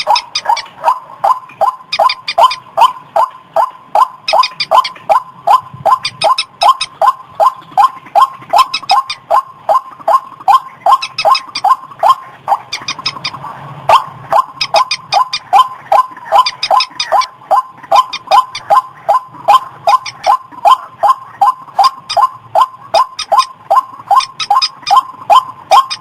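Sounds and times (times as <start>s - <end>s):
waterhen calling: 0.0s - 26.0s.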